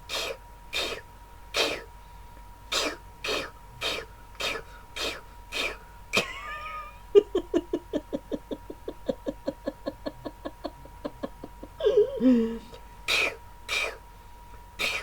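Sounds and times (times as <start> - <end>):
man fake sneezing: 1.6 - 1.9, 2.7 - 5.8, 13.1 - 14.0, 14.8 - 15.0
wavering vocal sound: 9.6 - 12.8.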